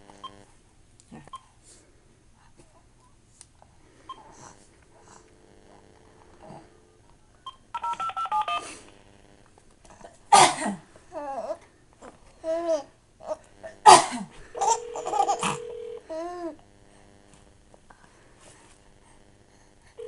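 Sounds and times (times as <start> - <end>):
phone keypad tones: 7.5 - 8.6, 14.6 - 16.0
person sneezing: 10.3 - 10.9, 13.6 - 14.4
baby laughing: 14.6 - 15.6.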